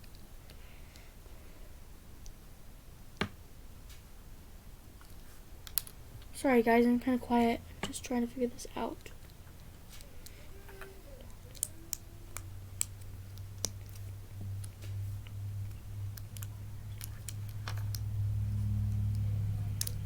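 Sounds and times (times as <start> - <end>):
low hum: 6.9 - 20.0.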